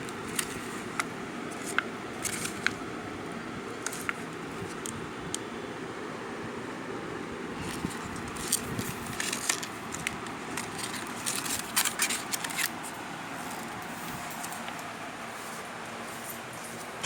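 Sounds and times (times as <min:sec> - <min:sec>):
crackles and clicks of handling: 0:00.0 - 0:05.6, 0:07.6 - 0:15.1.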